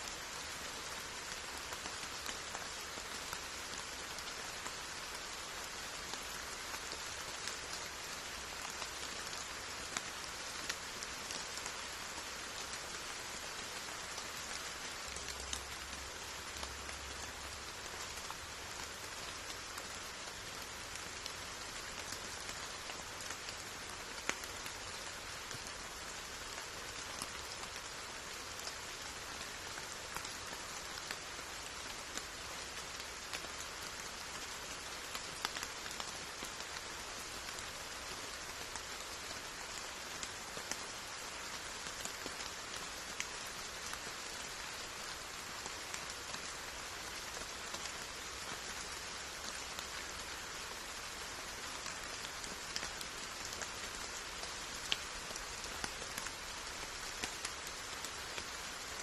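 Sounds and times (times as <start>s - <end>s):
steady rain hiss: 0.0s - 59.0s
raindrops ticking: 51.8s - 58.8s.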